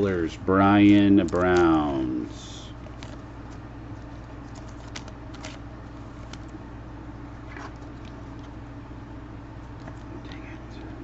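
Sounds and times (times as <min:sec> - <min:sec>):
trading cards clicking and rustling: 0:00.0 - 0:06.6
low electrical hum: 0:00.0 - 0:11.0.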